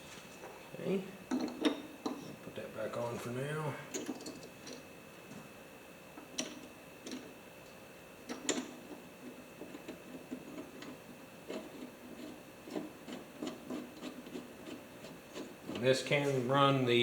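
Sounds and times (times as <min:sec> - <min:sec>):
small parts clicking and tapping: 0:03.9 - 0:04.8, 0:06.2 - 0:07.3, 0:08.3 - 0:08.9.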